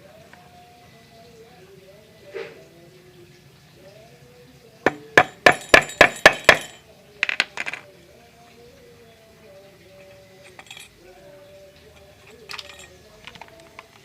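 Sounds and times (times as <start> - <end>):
hammer tapping metal: 4.9 - 7.8.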